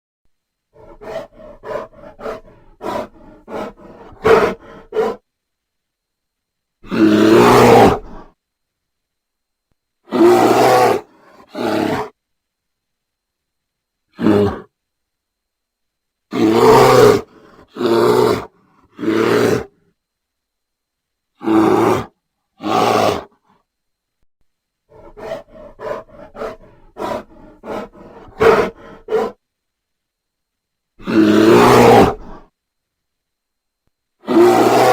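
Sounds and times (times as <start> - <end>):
bear grunting: 0.7 - 5.2, 6.8 - 8.3, 10.0 - 12.2, 14.1 - 14.7, 16.3 - 19.8, 21.4 - 23.5, 24.9 - 29.4, 31.0 - 32.5, 34.2 - 34.9
bear roaring: 0.7 - 5.2, 6.8 - 8.4, 10.0 - 12.2, 14.1 - 14.7, 16.3 - 19.8, 21.4 - 23.5, 24.9 - 29.4, 31.0 - 32.5, 34.2 - 34.9.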